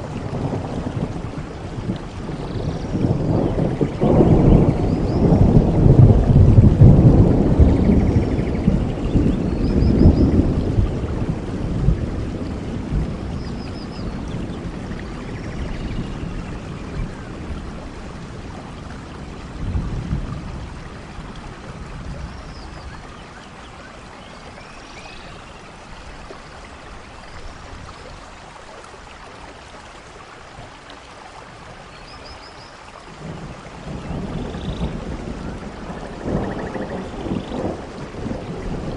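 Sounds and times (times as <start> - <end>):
low thunder rumble: 0.0 - 23.7, 33.1 - 38.9
steady rain falling: 0.0 - 38.9.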